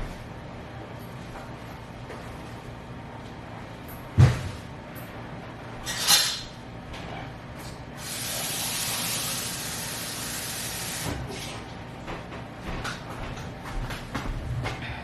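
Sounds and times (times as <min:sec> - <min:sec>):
water spraying: 0:08.0 - 0:11.1.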